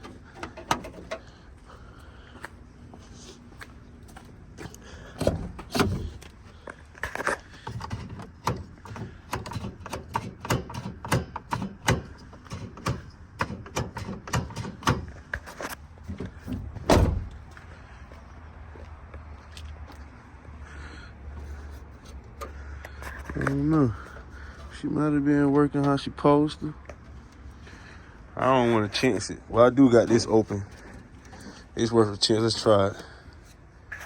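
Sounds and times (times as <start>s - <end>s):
metal clicks and clanks: 0.0s - 1.3s, 7.0s - 17.1s
heavy metallic thunk: 16.2s - 17.5s.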